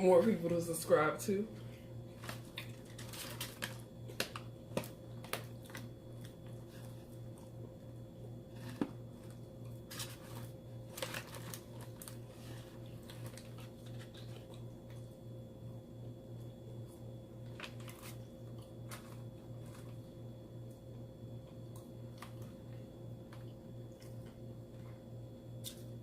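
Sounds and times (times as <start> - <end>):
steady low hum: 0.0 - 26.0
chewing with wet mouth clicks: 13.9 - 15.2, 21.4 - 25.0.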